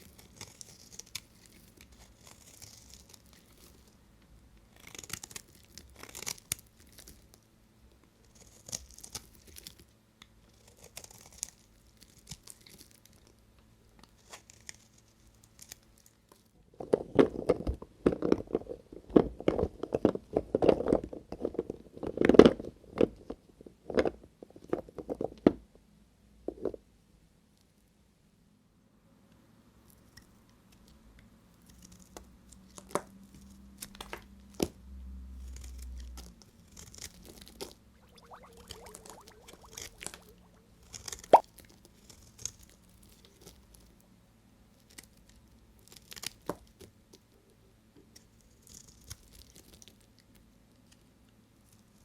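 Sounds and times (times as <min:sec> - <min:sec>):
soft crinkling and scraping: 0:00.0 - 0:07.4.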